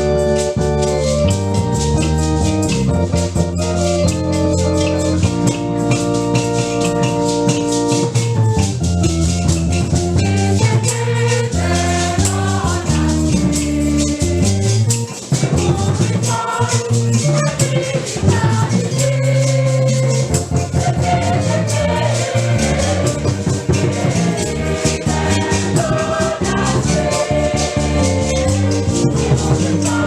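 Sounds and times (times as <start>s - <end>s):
organ chords: 0.0s - 30.0s
shaken rattle beat: 0.0s - 30.0s
voices singing: 10.3s - 14.6s, 15.3s - 30.0s.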